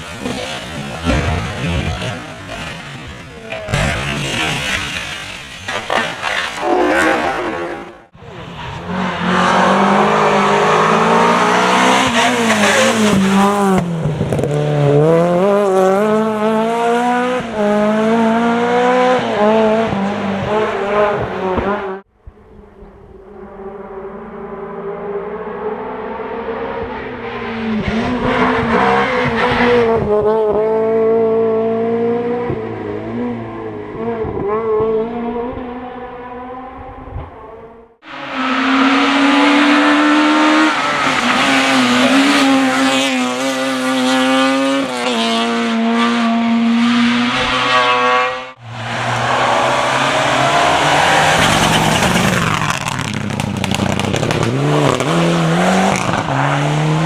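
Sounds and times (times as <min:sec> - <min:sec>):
tyre noise: 0:00.0 - 0:15.7, 0:48.6 - 0:57.0
rally car engines revving: 0:00.0 - 0:22.0, 0:23.0 - 0:57.0.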